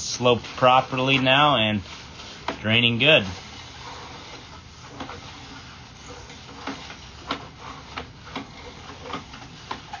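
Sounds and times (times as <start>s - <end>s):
steady hiss: 0.0s - 7.8s.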